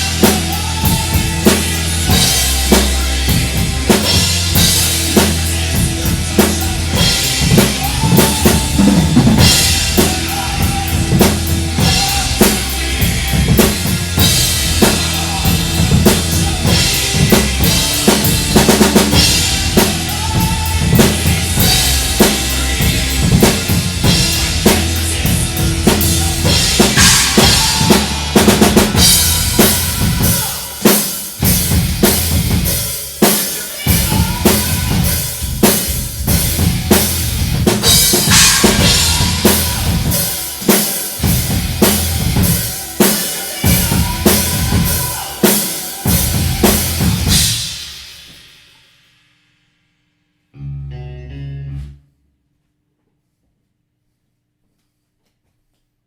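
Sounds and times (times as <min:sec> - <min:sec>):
heavy rock music: 0:00.0 - 0:48.6.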